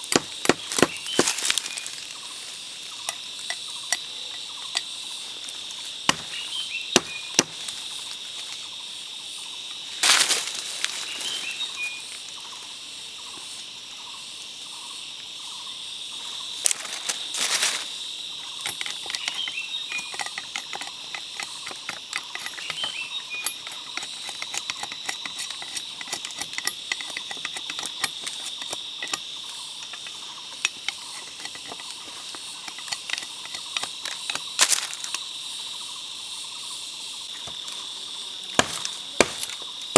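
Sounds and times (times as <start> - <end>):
sharp clicks and knocks: 0.0 - 2.1, 18.6 - 35.2
insect chorus drone: 0.0 - 39.9
rustling: 10.0 - 11.8, 16.6 - 18.0.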